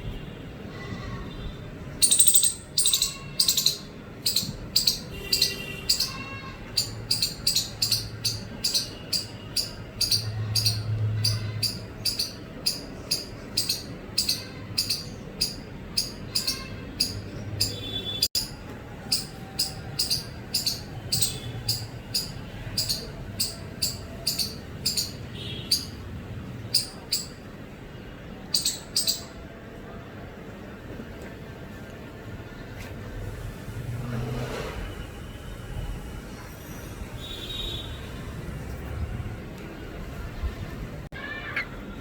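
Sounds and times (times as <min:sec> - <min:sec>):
squirrel chirping: 0:02.0 - 0:27.5, 0:28.4 - 0:29.4.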